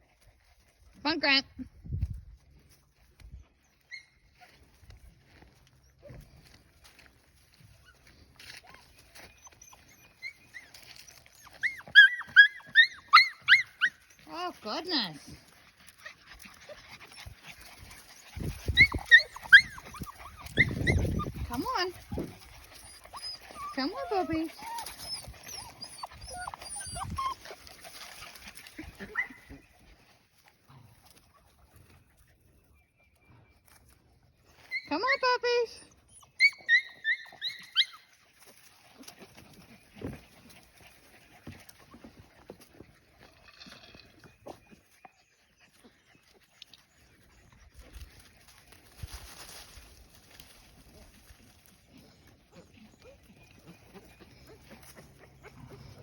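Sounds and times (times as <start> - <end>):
puppies yelping: 7.7 - 29.8, 35.7 - 42.9, 50.3 - 56.0.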